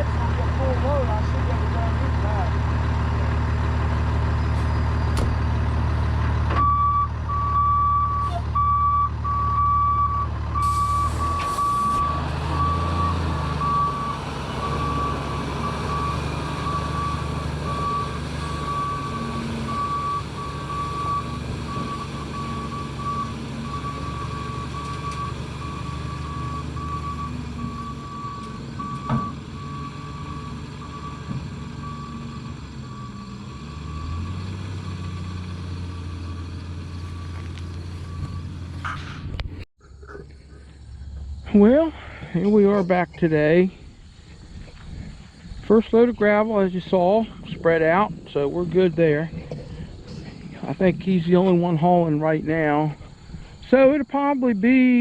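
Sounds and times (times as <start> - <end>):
diesel engine running: 0.0 - 55.0
back-up alarm beeping: 6.6 - 31.2.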